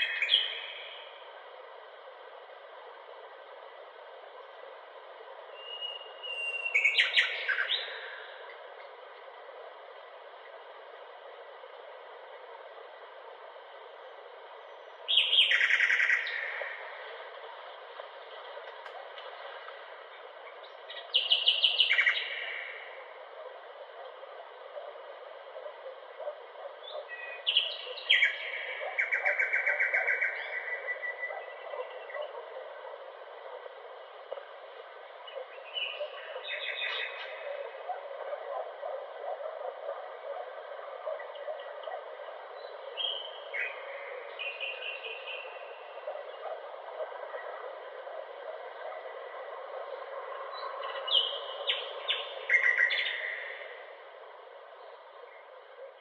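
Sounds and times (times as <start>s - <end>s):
bird singing: 0.0s - 1.2s, 5.5s - 8.9s, 14.7s - 16.9s, 20.1s - 23.0s, 25.6s - 33.0s, 35.2s - 46.6s, 50.4s - 54.1s
jungle background hiss: 0.0s - 56.0s
bird chirping: 5.6s - 8.3s, 20.5s - 22.8s, 35.3s - 37.7s, 42.6s - 46.6s.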